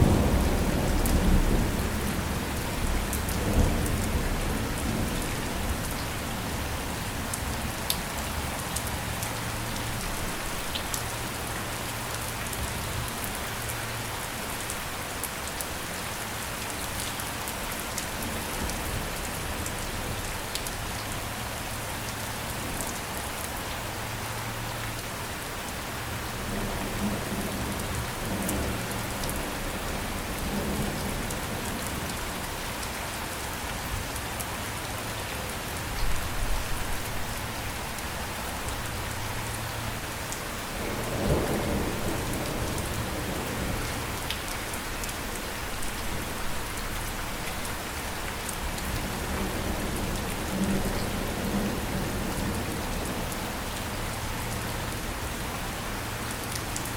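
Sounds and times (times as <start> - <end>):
thunder rumbling: 0.0 - 6.8, 40.8 - 44.2
steady rain falling: 0.0 - 56.9.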